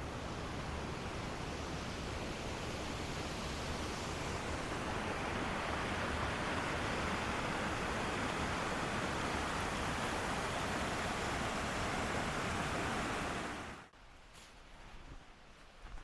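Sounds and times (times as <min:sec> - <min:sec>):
water rushing under ice: 0:01.8 - 0:13.9.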